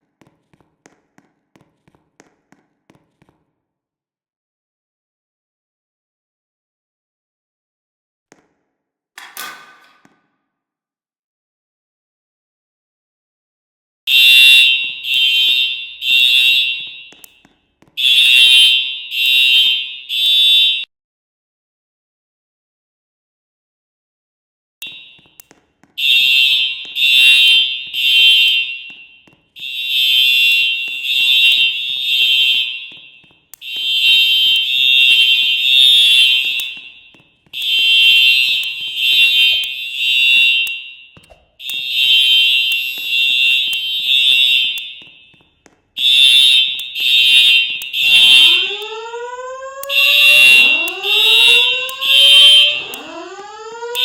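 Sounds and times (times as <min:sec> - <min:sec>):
fire alarm high beeps: 0:14.1 - 0:20.9, 0:24.8 - 0:54.0.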